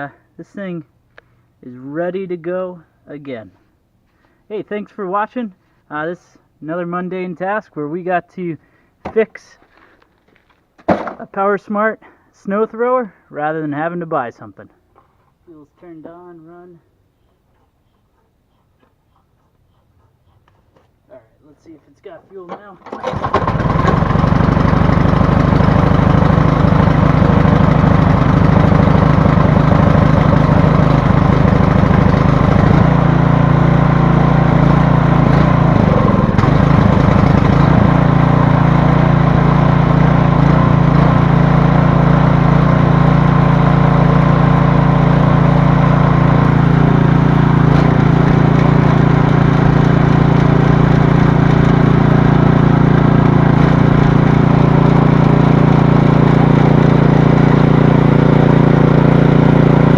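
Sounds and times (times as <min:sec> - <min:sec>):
small gasoline engine running: 0:22.9 - 0:59.9.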